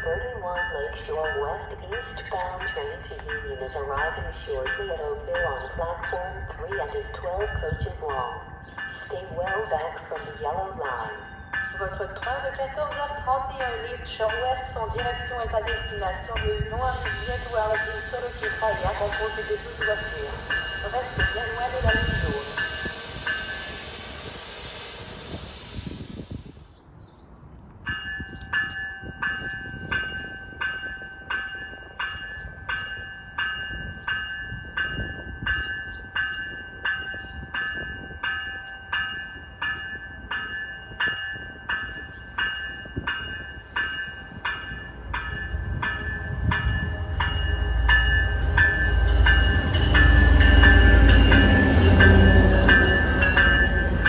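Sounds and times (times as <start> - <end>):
train bell ringing: 0.0 - 26.7, 27.9 - 54.0
low rumble of arriving train: 0.0 - 27.2, 27.8 - 54.0
hiss: 16.8 - 26.7.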